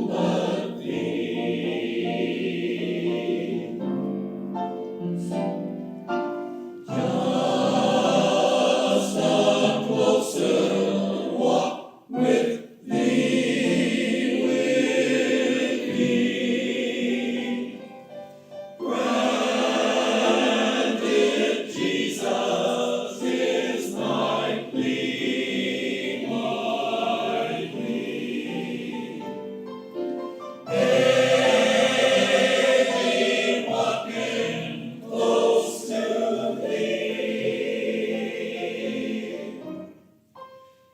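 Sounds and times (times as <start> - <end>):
choir singing: 0.0 - 29.7, 30.5 - 40.3.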